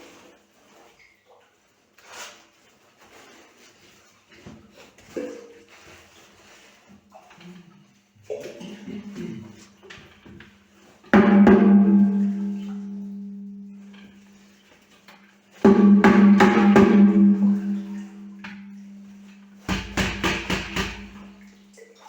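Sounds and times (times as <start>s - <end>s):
drum hits: 11.2s - 13.2s, 15.6s - 18.9s, 19.6s - 21.4s
held low note: 11.3s - 14.0s, 15.7s - 19.4s.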